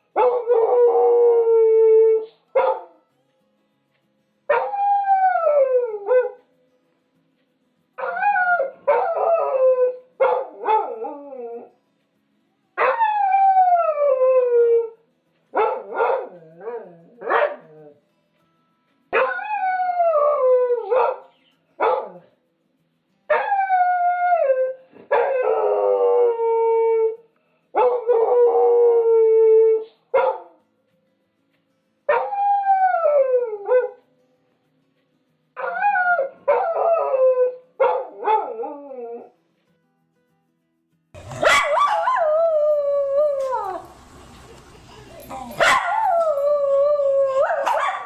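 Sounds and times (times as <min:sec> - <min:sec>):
dog howling: 0:41.2 - 0:48.0
dog yipping: 0:41.2 - 0:48.0.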